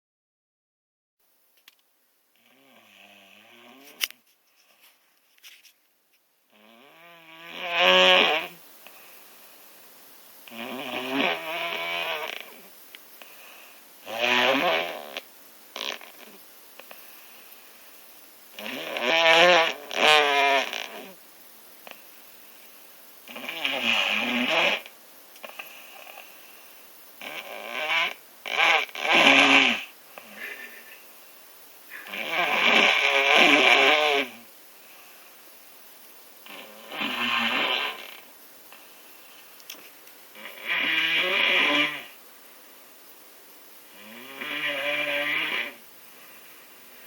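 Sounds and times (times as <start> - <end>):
person snoring: 2.4 - 4.0, 10.5 - 15.2, 27.2 - 31.1, 31.9 - 34.5, 36.4 - 38.3, 40.4 - 42.2, 43.9 - 47.0.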